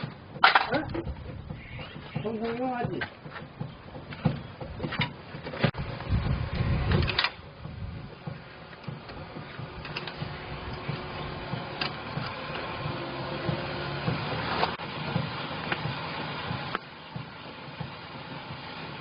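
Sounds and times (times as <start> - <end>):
sharp mechanical knocks and clicks: 0.0 - 19.0
low rumble: 5.7 - 14.5.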